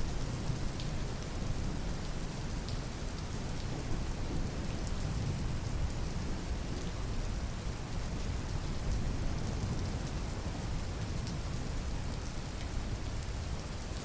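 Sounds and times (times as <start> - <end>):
steady rain falling: 0.0 - 14.0
rain drop ticks: 2.6 - 3.3.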